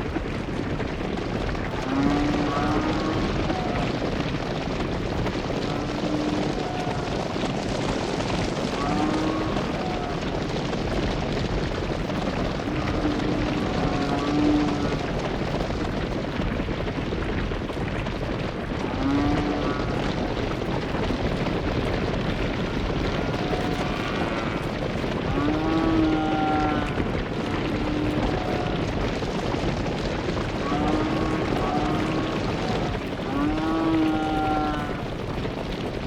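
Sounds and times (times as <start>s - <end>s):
steady rushing background noise: 0.0s - 36.0s
cattle mooing: 1.8s - 4.4s, 5.4s - 7.6s, 8.2s - 10.7s, 12.6s - 15.2s, 18.9s - 20.2s, 23.0s - 35.2s.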